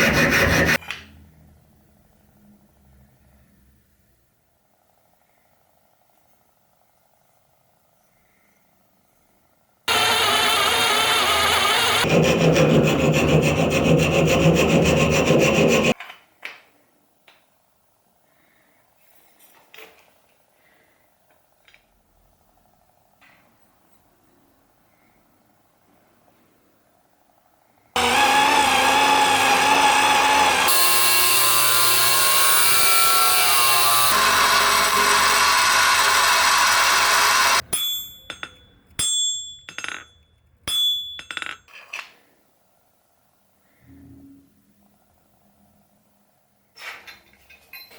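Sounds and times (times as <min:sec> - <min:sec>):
tool rasping on knife: 0:00.0 - 0:00.8, 0:11.9 - 0:16.0
electric power tool running: 0:09.9 - 0:12.1, 0:28.0 - 0:37.6.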